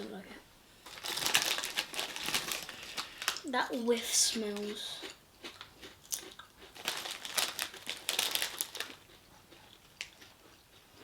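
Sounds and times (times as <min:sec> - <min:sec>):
crisp packet crinkling: 0:00.8 - 0:03.5, 0:06.1 - 0:09.1
crisps crunching in the mouth: 0:00.8 - 0:03.5, 0:04.9 - 0:11.0.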